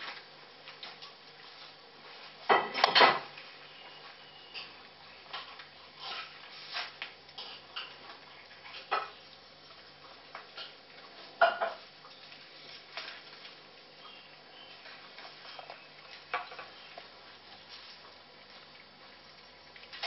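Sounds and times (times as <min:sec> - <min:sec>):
food bowls clinking: 0:10.4 - 0:13.0.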